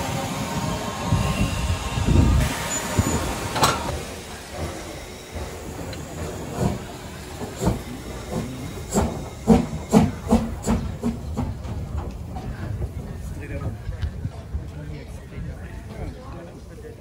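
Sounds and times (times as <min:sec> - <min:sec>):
steam locomotive hissing steam: 0:00.0 - 0:13.6
steam locomotive chuffing: 0:00.0 - 0:14.7.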